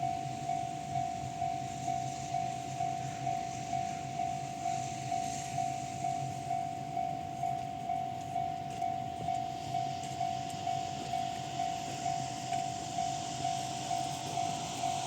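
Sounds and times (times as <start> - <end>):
level crossing warning bell: 0.0 - 15.0
faint hiss: 1.6 - 6.5, 9.5 - 15.0.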